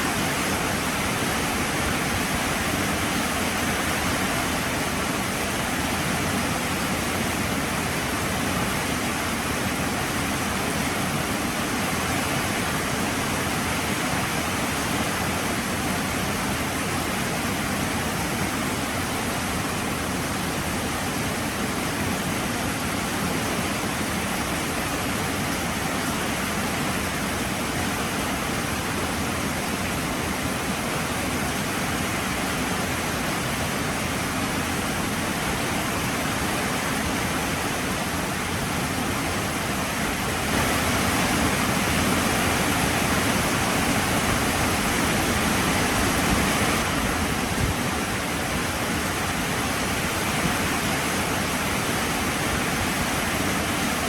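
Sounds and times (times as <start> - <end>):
heavy rain falling: 17.8 - 54.0.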